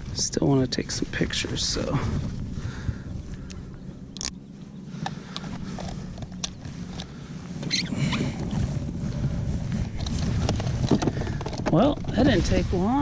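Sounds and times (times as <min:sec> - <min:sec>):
wind rumbling on microphone: 0:00.0 - 0:13.0
small clicks and knocks: 0:09.8 - 0:11.8.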